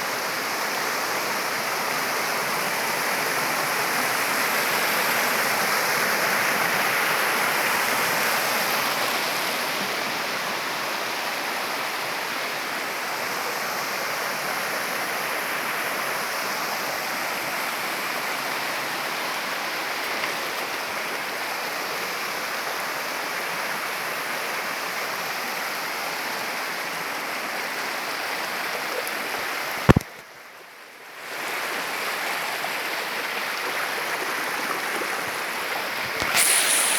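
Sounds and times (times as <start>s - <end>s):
waterfall rushing: 36.0s - 36.9s.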